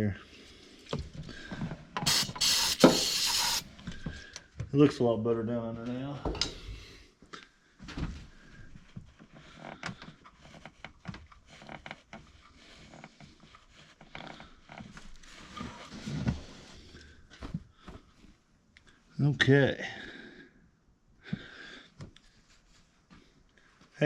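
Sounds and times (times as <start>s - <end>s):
tools clicking and tapping: 2.0s - 3.6s.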